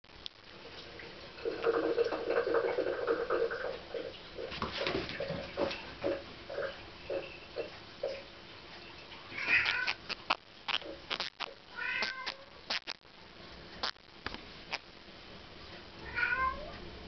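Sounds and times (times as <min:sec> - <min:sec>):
catfish short croaks: 0:09.4 - 0:13.0
catfish buzzing creak: 0:09.4 - 0:13.1, 0:13.8 - 0:14.1.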